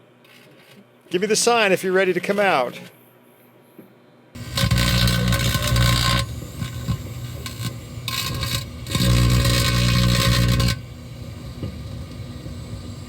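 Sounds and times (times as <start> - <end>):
electrical arcing crackle: 4.4 - 13.0
microwave oven buzzing hum: 4.4 - 13.0.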